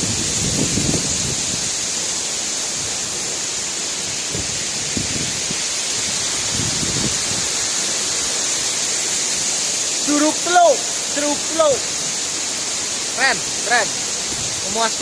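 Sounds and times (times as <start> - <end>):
waterfall hiss: 0.0 - 15.0.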